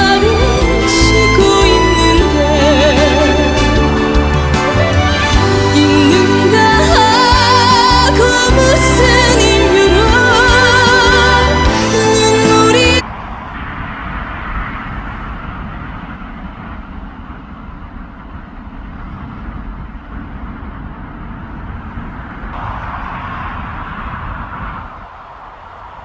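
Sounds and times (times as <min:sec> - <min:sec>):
song music: 0:00.0 - 0:13.0.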